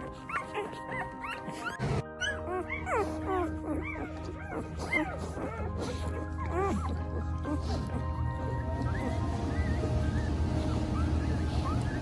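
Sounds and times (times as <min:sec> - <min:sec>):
background music: 0:00.0 - 0:12.0
puppies whining and yipping: 0:00.0 - 0:12.0.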